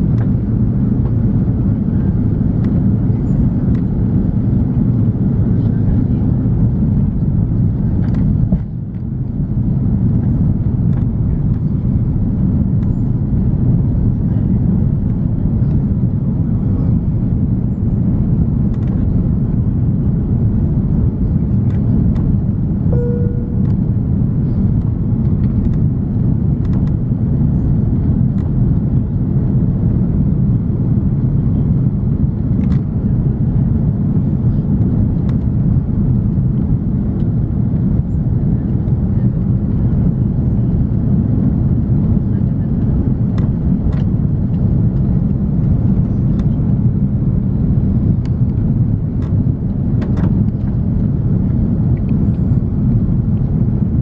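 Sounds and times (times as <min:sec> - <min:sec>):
airplane cabin rumble: 0:00.0 - 0:54.0
short single tone: 0:22.9 - 0:23.8.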